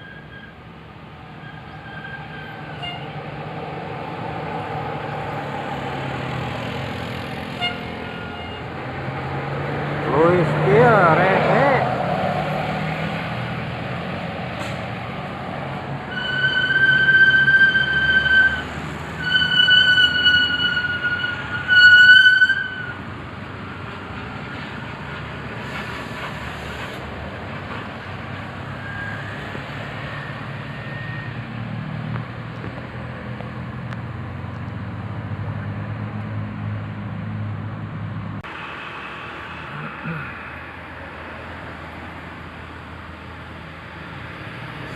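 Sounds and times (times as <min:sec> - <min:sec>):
bus engine rumbling: 0:00.0 - 0:44.9
bus air horn blasts: 0:02.7 - 0:03.2, 0:07.5 - 0:08.7, 0:16.1 - 0:23.0.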